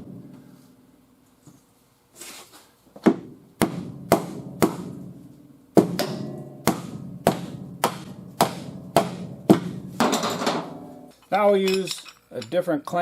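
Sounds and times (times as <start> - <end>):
hammer blows on sheet metal: 5.8 - 10.9.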